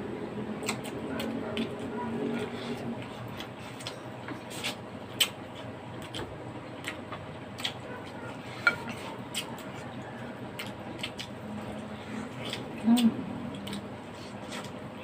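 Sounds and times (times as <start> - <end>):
cutlery clinking against dishes: 8.6 - 9.0.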